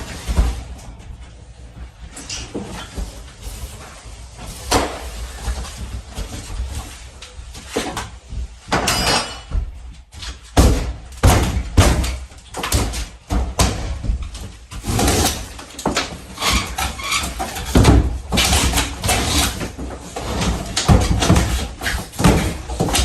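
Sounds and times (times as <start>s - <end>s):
demolition knocks and bangs: 7.7s - 23.0s.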